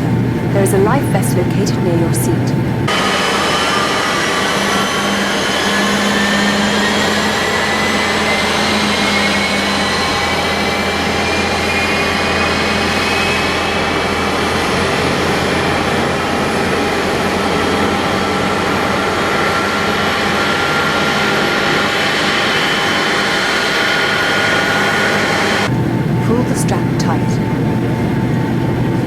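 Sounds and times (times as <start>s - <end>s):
air-conditioning running: 0.0s - 3.2s, 18.5s - 29.0s
jet engines running: 0.0s - 29.0s.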